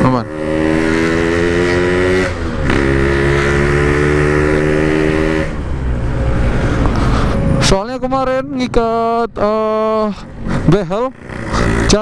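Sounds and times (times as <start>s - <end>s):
two-stroke motorcycle engine: 11.0s - 12.0s.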